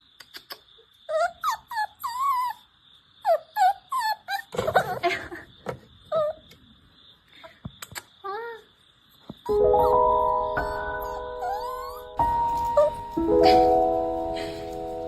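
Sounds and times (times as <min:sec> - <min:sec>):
puppy whining and whimpering: 0:01.1 - 0:05.0, 0:06.1 - 0:06.5, 0:09.5 - 0:14.6.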